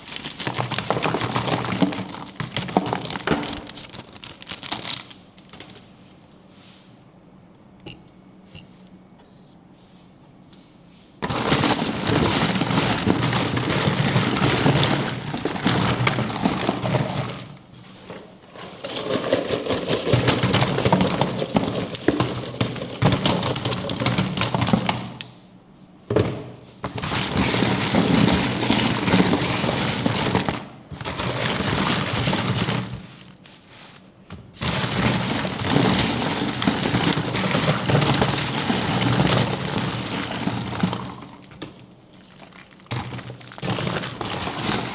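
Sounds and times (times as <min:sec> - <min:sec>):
packaging crinkling and tearing: 0:00.0 - 0:05.9, 0:34.8 - 0:44.9.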